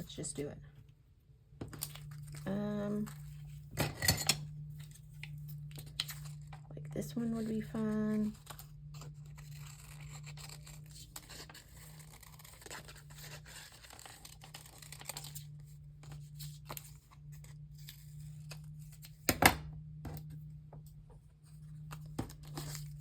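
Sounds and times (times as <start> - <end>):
paper tearing: 8.2 - 15.4.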